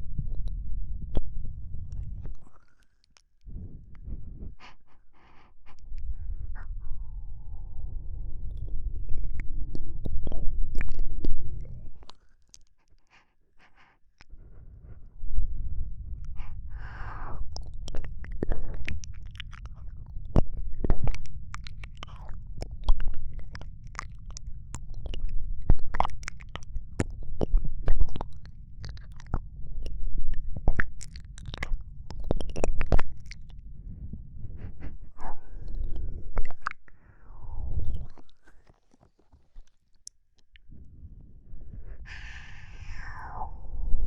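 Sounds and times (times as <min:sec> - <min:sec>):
steady low rumble: 0:00.0 - 0:02.7, 0:03.4 - 0:12.1, 0:13.2 - 0:38.7, 0:40.5 - 0:44.0
soft breath: 0:01.7 - 0:10.4, 0:11.5 - 0:20.1, 0:31.1 - 0:39.6, 0:40.6 - 0:44.0
wet mouth clicks and smacks: 0:08.5 - 0:14.3, 0:17.5 - 0:33.6, 0:34.6 - 0:36.9, 0:37.8 - 0:39.0.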